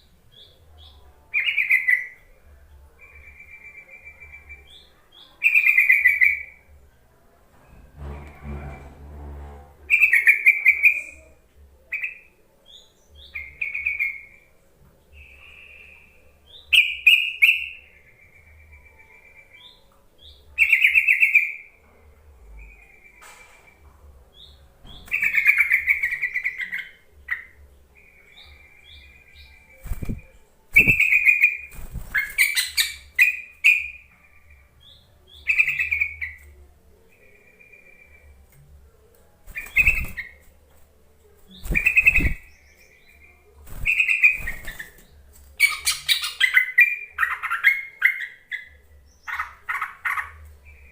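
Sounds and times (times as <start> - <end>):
bulbul calling: 30.8 - 34.1, 41.6 - 42.6.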